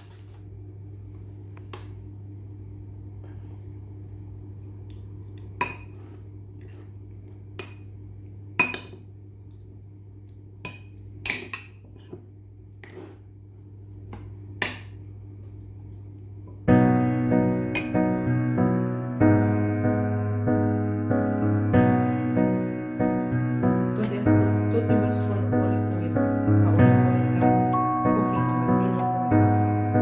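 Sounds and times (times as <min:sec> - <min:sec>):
steady low hum: 0:00.0 - 0:19.2
soft piano music: 0:16.6 - 0:30.0.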